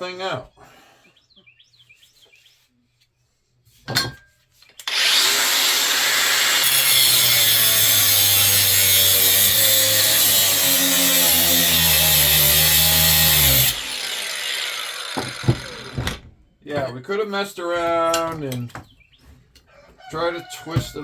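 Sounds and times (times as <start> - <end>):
power tool cutting metal: 4.8 - 16.3.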